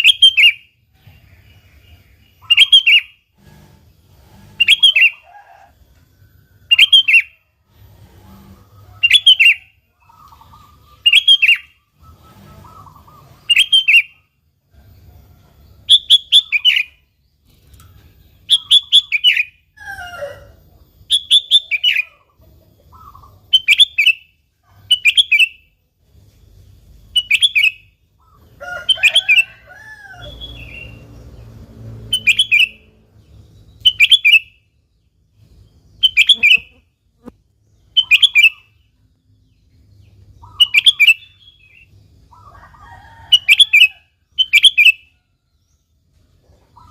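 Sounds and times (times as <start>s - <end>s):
bird chirping: 0.0s - 5.3s, 6.5s - 46.9s
fainter lower bird calls: 0.0s - 5.7s, 6.4s - 31.2s, 32.1s - 45.9s.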